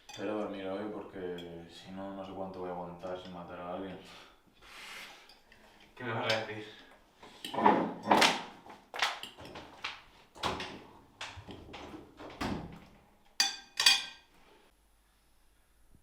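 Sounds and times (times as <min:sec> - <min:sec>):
irregular knocks and thuds: 0:07.6 - 0:13.1.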